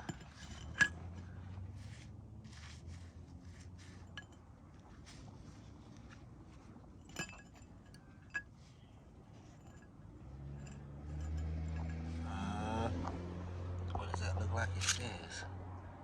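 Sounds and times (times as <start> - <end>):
metal parts clinking: 0.0 - 1.3, 7.0 - 8.7, 9.4 - 9.8, 10.5 - 12.1, 14.8 - 15.1.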